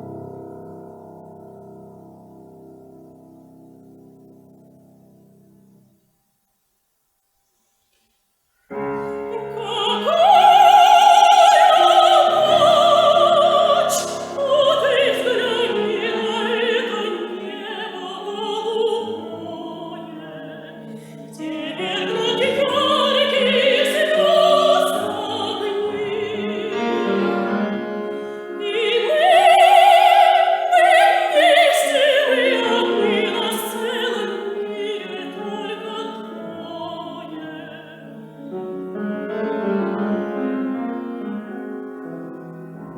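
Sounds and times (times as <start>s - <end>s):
piano accompaniment: 0.0s - 5.9s, 8.7s - 42.9s
operatic soprano singing: 9.0s - 38.6s.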